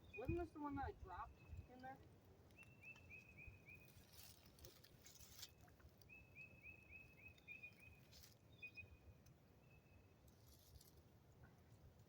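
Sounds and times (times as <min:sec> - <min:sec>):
bird chirping: 0:00.0 - 0:04.1, 0:06.1 - 0:09.0
faint outdoor ambience: 0:00.0 - 0:12.0
soft rustles: 0:03.8 - 0:06.0, 0:10.3 - 0:11.1.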